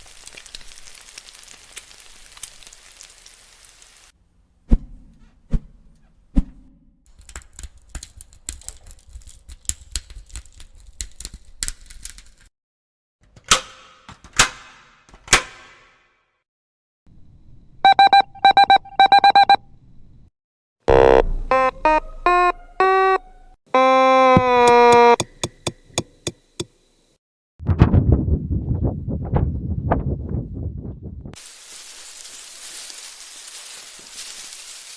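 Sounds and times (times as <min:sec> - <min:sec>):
crackling hiss with clicks: 0:00.0 - 0:04.1, 0:31.4 - 0:34.9
long buzzing tone: 0:20.9 - 0:21.7, 0:23.8 - 0:25.2
electronic telephone ringing: 0:20.9 - 0:23.2
short electronic tones: 0:20.9 - 0:23.2, 0:23.8 - 0:25.2
loud deep thumps: 0:27.6 - 0:31.4
low hum: 0:27.6 - 0:31.4.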